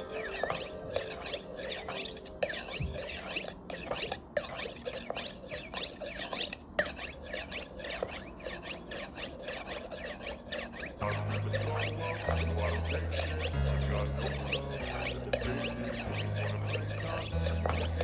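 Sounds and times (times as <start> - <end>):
knife scraping on sharpener: 0.0 - 18.0.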